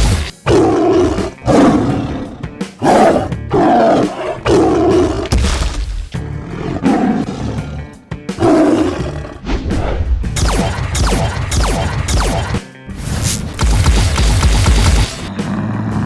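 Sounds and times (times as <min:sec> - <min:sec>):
growling roar sound effects: 0:00.0 - 0:05.3, 0:06.2 - 0:10.0, 0:15.3 - 0:16.0
background music: 0:00.0 - 0:16.0.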